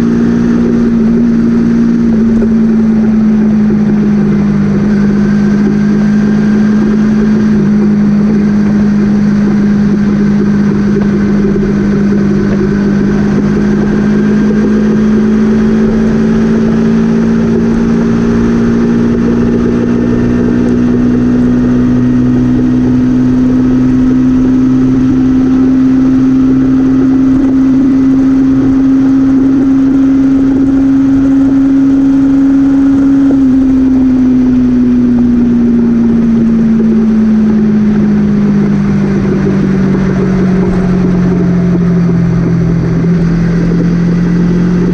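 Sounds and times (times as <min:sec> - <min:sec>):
vehicle engine running: 0:00.0 - 0:44.9.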